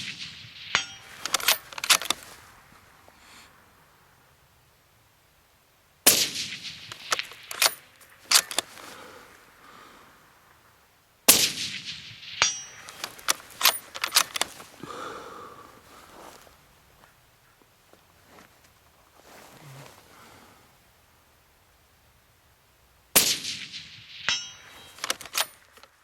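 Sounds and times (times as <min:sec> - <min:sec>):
suppressed rifle shots: 0:00.0 - 0:02.3, 0:06.0 - 0:09.0, 0:11.3 - 0:14.6, 0:23.2 - 0:25.7
rifle bolt clicking: 0:00.8 - 0:02.2, 0:06.9 - 0:08.8, 0:12.8 - 0:14.6, 0:24.8 - 0:26.0
brief metallic ring: 0:12.4 - 0:13.0, 0:24.3 - 0:25.6.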